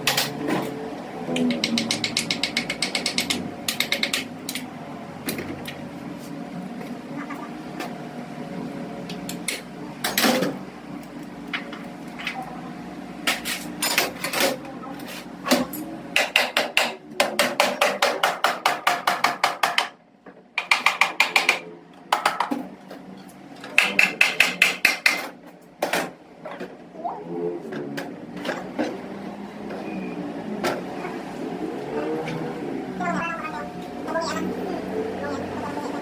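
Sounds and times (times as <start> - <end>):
hammer tapping on metal: 1.4 - 4.6, 16.2 - 20.0, 20.6 - 22.5, 23.8 - 25.2.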